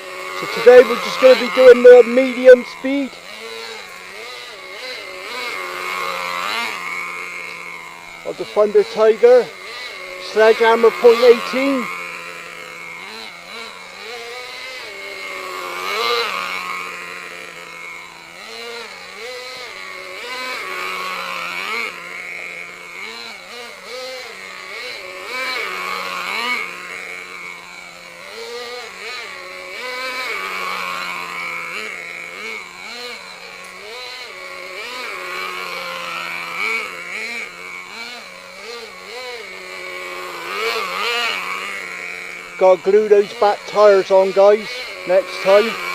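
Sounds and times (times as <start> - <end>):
nitro engine revving: 0.0 - 45.9.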